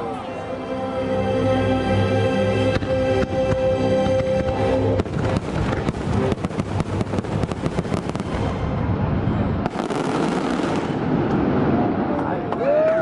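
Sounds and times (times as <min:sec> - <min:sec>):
music: 0:00.0 - 0:07.0
fireworks bangs and crackles: 0:02.7 - 0:12.6.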